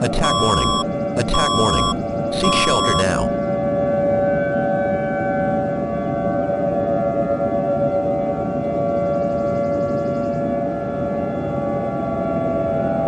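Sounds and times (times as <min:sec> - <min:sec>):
civil defense siren: 0:03.4 - 0:13.0.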